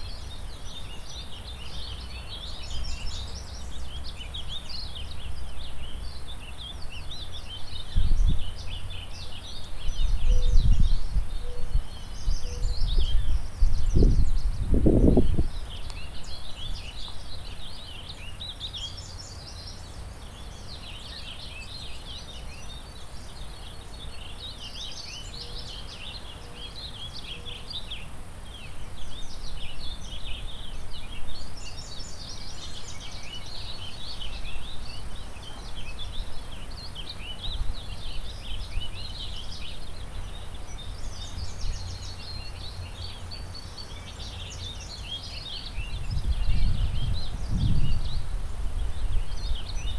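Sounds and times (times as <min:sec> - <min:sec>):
songbirds singing: 0:00.0 - 0:49.9
wind rumble: 0:12.3 - 0:15.8, 0:45.8 - 0:49.9.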